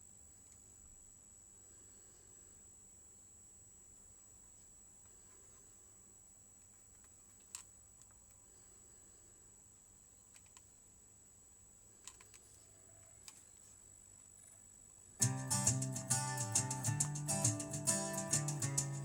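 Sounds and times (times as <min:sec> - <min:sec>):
faint clicks: 0:06.6 - 0:08.4, 0:10.3 - 0:10.7, 0:12.0 - 0:14.6
guitar music: 0:15.2 - 0:19.0.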